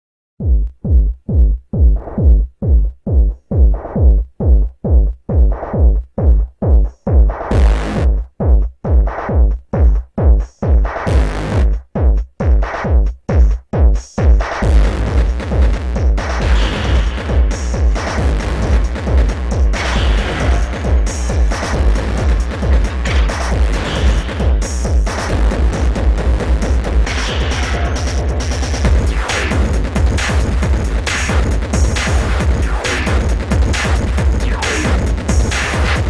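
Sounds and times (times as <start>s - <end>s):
pulsing synth bass: 7.5s - 8.2s, 11.1s - 11.8s, 14.6s - 36.0s
electronic instrumental music: 14.6s - 36.0s.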